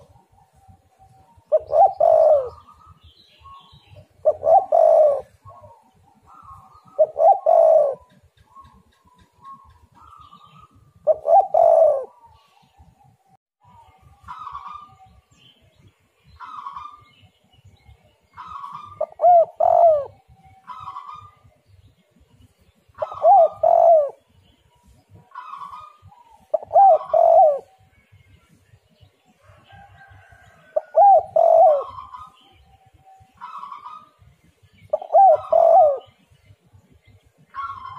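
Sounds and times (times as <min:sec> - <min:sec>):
dove cooing: 0:00.0 - 0:15.1, 0:16.4 - 0:17.1, 0:18.3 - 0:21.6, 0:22.9 - 0:24.3, 0:25.1 - 0:27.9, 0:29.4 - 0:34.2, 0:34.8 - 0:36.3, 0:37.5 - 0:37.9.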